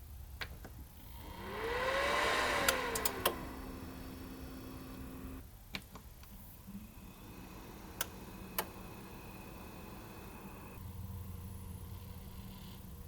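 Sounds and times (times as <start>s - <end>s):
fan clicks: 0.4s - 6.3s, 7.6s - 10.8s
cooling fan whirring: 0.6s - 13.0s.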